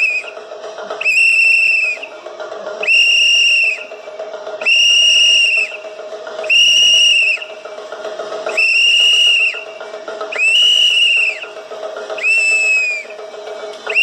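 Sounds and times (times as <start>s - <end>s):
high-pitched whistle blasts: 0.0s - 2.2s, 2.8s - 4.0s, 4.6s - 7.6s, 8.5s - 11.6s, 12.2s - 13.3s.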